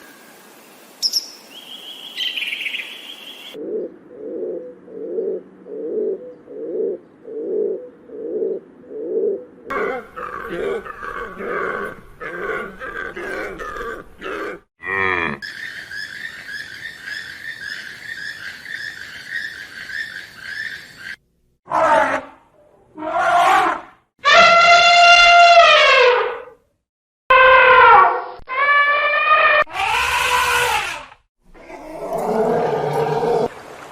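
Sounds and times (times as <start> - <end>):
low animal calls: 3.6 - 15.6
high rippling animal call: 9.7 - 14.0
short falling animal cry: 27.3 - 33.5.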